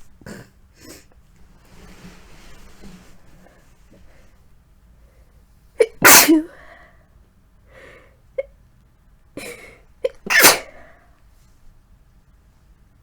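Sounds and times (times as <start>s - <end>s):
woman sneezing: 5.8s - 6.6s, 9.4s - 10.8s
short breaths: 7.7s - 8.2s.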